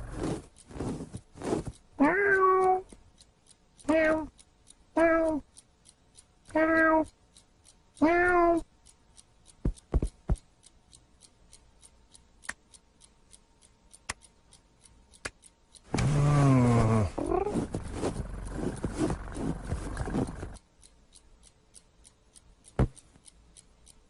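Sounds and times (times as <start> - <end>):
faint regular ticking: 0.0 - 24.0
sharp clicks: 0.0 - 24.0
cat meowing: 8.0 - 8.6.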